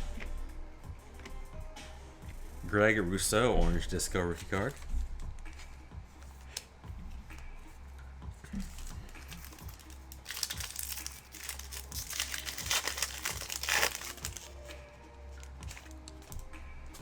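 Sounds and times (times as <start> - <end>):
plastic foil wrapper crinkling: 8.5 - 17.0.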